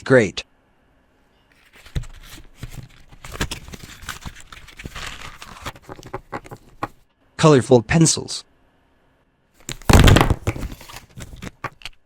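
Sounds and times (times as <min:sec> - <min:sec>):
paper rustling: 0:01.6 - 0:07.0, 0:09.7 - 0:11.8
marker pens clicking and tapping: 0:05.8 - 0:07.0.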